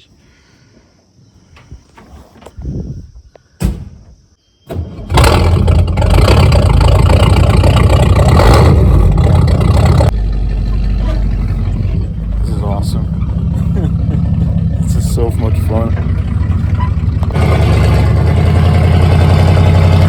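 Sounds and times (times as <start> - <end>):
truck engine starting and running: 4.7 - 20.0.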